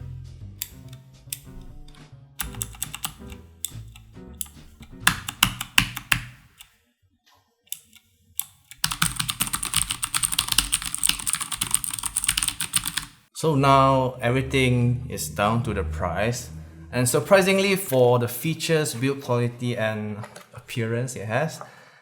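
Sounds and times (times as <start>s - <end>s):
background music: 0.0s - 6.8s, 7.7s - 21.9s
mechanical keyboard keys clacking: 2.4s - 6.7s, 7.7s - 13.2s.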